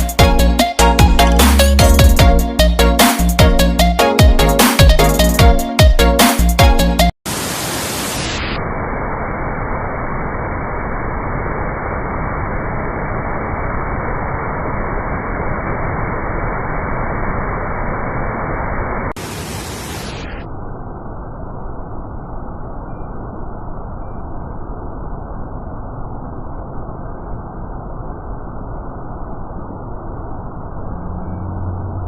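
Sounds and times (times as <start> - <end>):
waterfall roaring: 7.3 - 8.6, 19.1 - 20.5.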